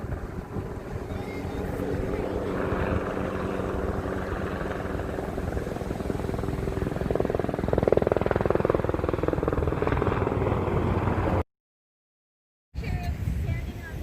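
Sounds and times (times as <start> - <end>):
helicopter engine and rotor: 0.0 - 11.4.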